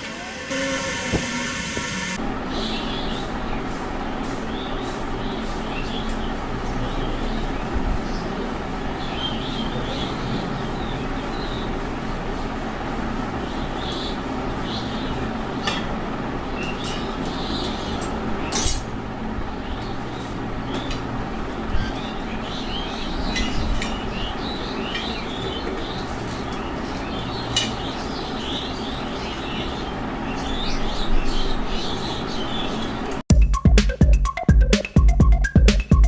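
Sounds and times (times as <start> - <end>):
metallic clinks of fan parts: 6.0 - 7.4, 16.7 - 19.0.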